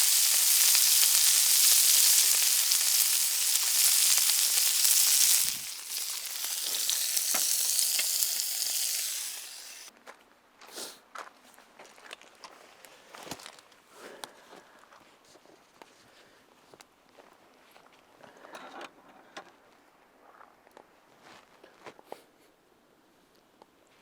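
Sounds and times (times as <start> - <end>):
meat sizzling on a griddle: 0.0 - 9.9.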